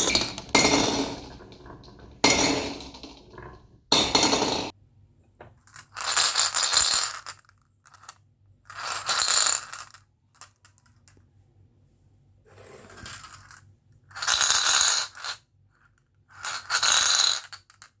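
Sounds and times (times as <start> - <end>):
marbles rattling down marble run: 0.0 - 4.7, 5.8 - 8.1, 8.7 - 10.0, 14.2 - 15.4, 16.4 - 18.0.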